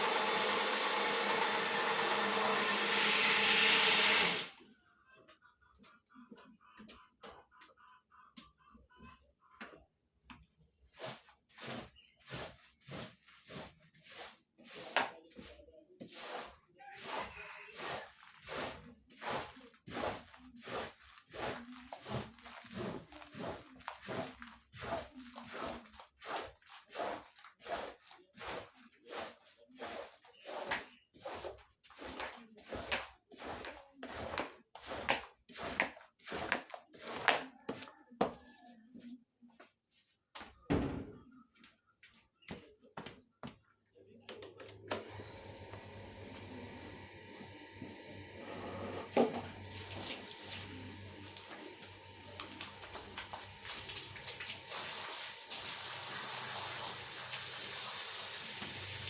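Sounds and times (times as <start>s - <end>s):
brush scrubbing carpet: 11.0s - 37.9s, 45.1s - 58.9s.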